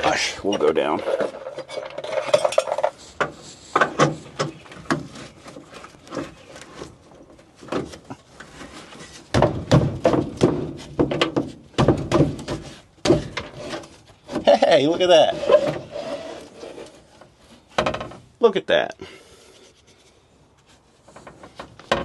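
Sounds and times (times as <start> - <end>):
steady squeak: 0.1 - 2.6, 15.0 - 17.2.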